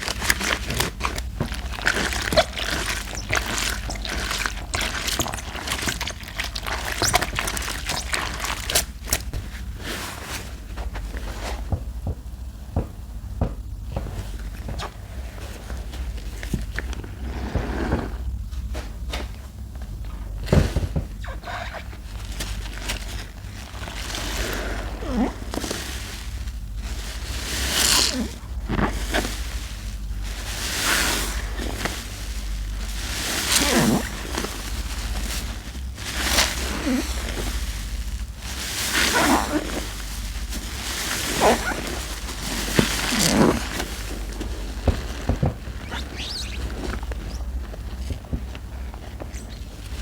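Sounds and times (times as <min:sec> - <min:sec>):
sponge in soap lather: 0:00.0 - 0:10.0, 0:22.3 - 0:50.0.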